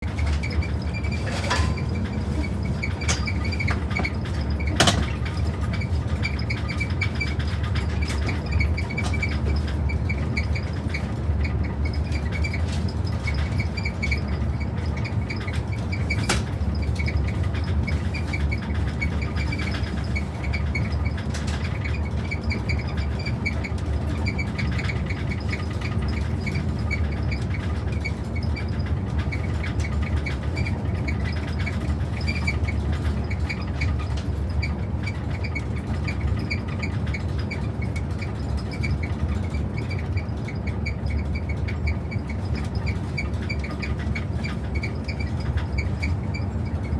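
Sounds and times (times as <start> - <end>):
train rumbling: 0.0 - 46.9
high-pitched squeaks: 0.4 - 4.1.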